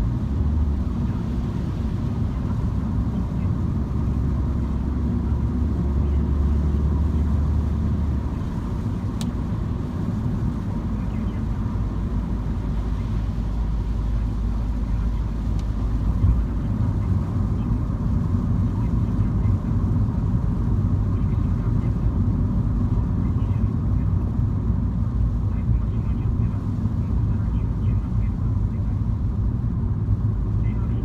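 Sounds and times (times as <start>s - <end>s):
car engine driving: 0.0s - 31.0s
road rumble: 0.0s - 31.0s
sharp tick: 9.2s - 9.4s.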